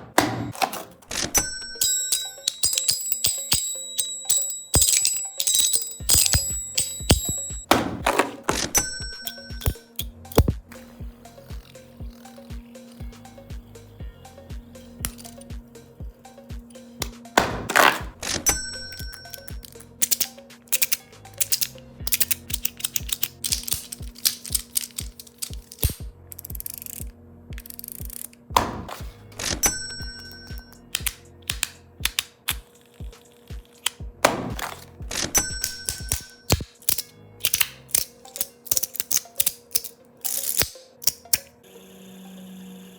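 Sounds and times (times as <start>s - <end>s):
soft background music: 0.0s - 42.9s
fidget toy clicks and taps: 1.6s - 10.9s, 14.9s - 15.6s, 16.5s - 18.1s, 18.7s - 28.7s, 30.0s - 41.5s.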